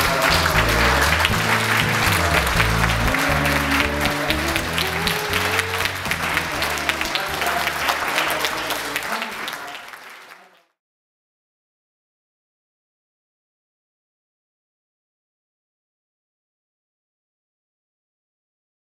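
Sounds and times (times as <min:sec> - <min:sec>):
music with steady bass line: 0:00.0 - 0:08.2
crowd applauding: 0:00.0 - 0:10.8.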